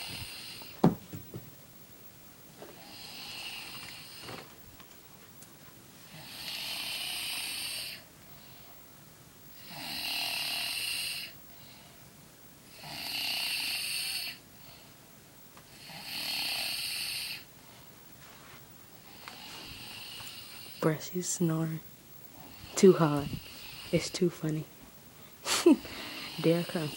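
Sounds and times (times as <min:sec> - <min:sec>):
person snoring: 0:00.0 - 0:00.7, 0:02.8 - 0:04.3, 0:06.1 - 0:08.0, 0:09.6 - 0:11.4, 0:12.7 - 0:14.4, 0:15.7 - 0:17.4, 0:19.1 - 0:20.9, 0:25.7 - 0:26.9
quiet breaths: 0:02.6 - 0:04.5, 0:06.0 - 0:26.9.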